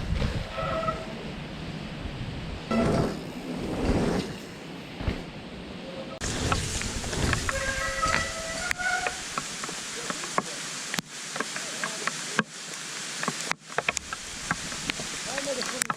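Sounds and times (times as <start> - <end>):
wind on microphone: 0.0 - 4.4, 6.2 - 9.6
brake squeal: 0.5 - 1.2, 2.7 - 4.6, 6.3 - 9.4.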